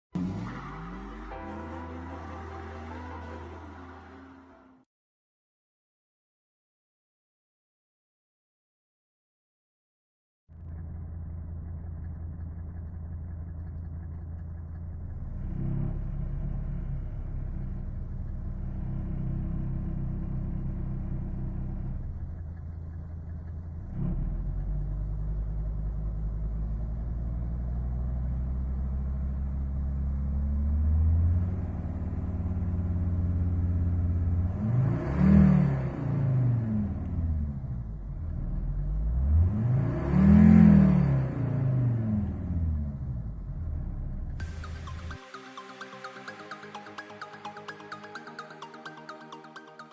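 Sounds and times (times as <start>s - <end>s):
diesel engine running and revving: 0.0s - 4.8s, 10.5s - 45.2s.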